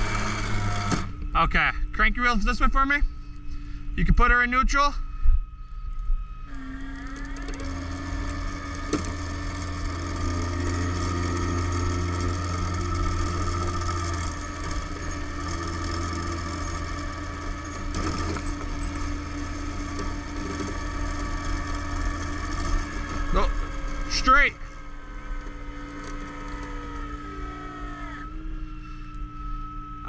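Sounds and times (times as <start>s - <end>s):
winch whining: 0.0s - 30.0s
rigging clicks and creaks: 5.9s - 28.3s.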